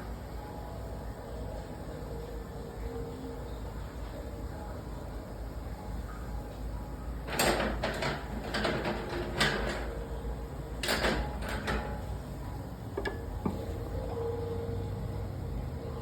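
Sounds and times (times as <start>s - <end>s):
steady low hum: 9.6s - 16.0s.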